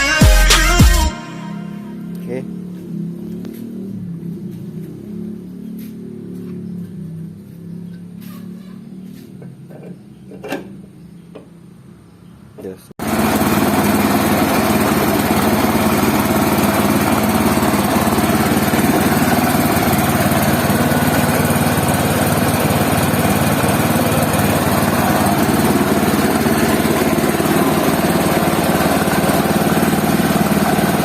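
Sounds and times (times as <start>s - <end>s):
stationary petrol engine running: 12.6s - 31.0s.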